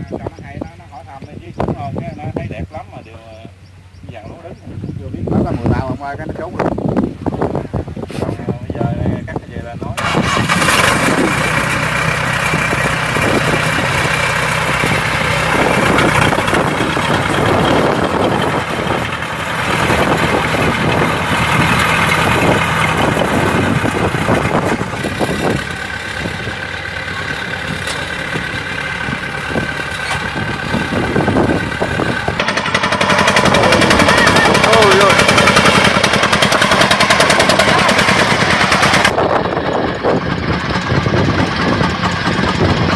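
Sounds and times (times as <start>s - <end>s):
combine harvester engine drone: 10.0s - 42.9s.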